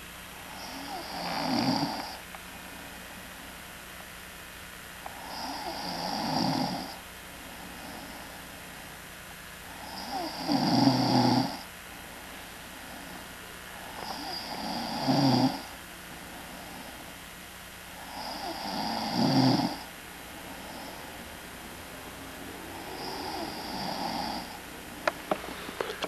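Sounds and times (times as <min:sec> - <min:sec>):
man snoring loudly: 0:00.5 - 0:02.2, 0:05.1 - 0:07.0, 0:09.7 - 0:11.6, 0:13.8 - 0:15.8, 0:18.0 - 0:19.9, 0:22.6 - 0:24.7.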